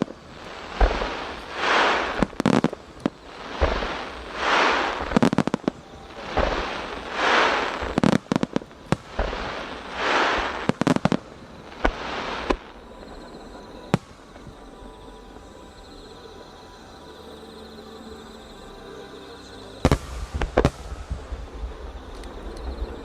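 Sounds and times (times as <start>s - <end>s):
fireworks bangs: 0.0s - 14.9s, 19.8s - 23.0s
crackling hiss of fireworks: 0.0s - 23.0s.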